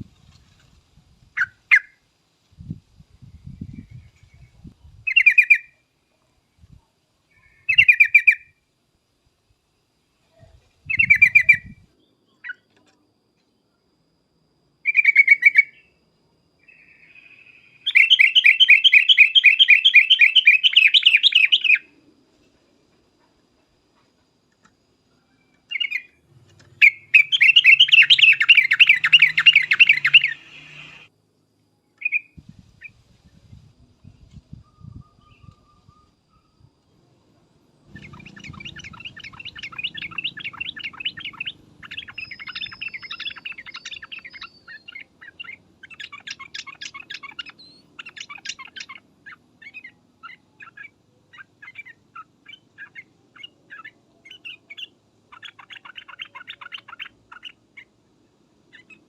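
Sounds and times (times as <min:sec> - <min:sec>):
bird chattering calls: 0:16.7 - 0:21.8, 0:26.8 - 0:31.1, 0:37.9 - 0:58.0.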